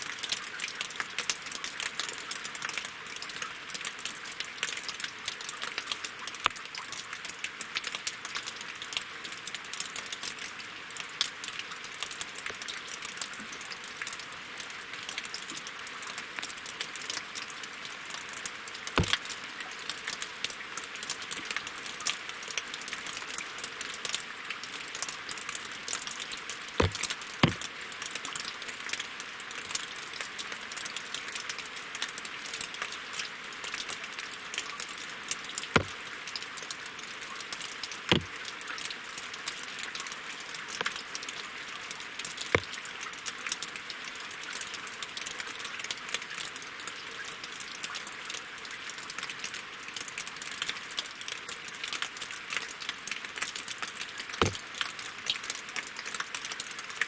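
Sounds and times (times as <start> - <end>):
rain pattering on water: 0.0 - 57.0
heavy single raindrops: 19.0 - 19.4, 26.8 - 28.1, 35.6 - 36.7, 38.0 - 38.8, 42.5 - 42.8, 54.3 - 55.4.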